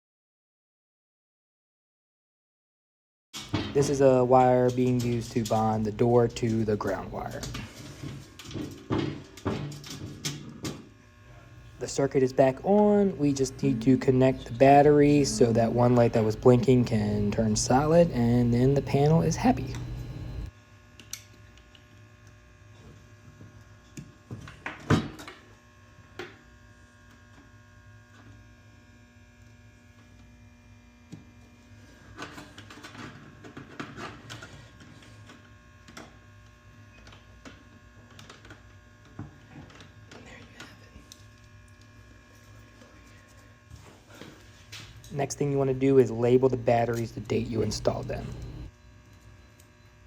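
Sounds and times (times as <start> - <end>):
steady electrical hum: 3.8 - 20.5, 40.8 - 50.0.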